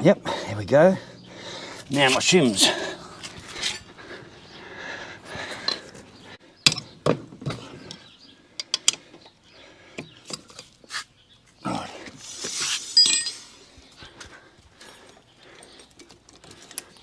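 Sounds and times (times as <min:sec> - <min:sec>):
metallic clicks of brake parts: 0:07.8 - 0:09.4.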